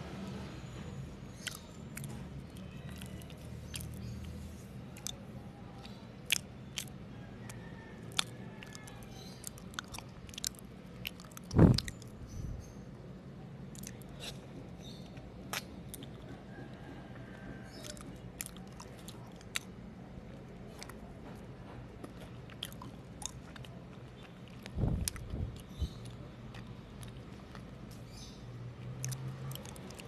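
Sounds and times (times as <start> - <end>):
sticky chewing clicks and smacks: 1.4 - 12.2, 13.7 - 16.8, 17.7 - 19.8, 20.7 - 30.0
low thumps: 11.5 - 12.6.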